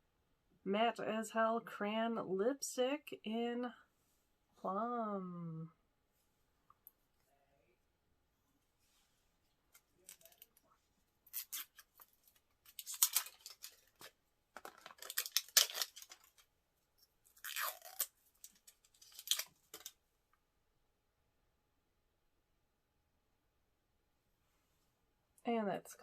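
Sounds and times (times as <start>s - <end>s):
packaging tearing and rustling: 9.8s - 10.6s, 11.2s - 16.5s, 17.3s - 20.0s.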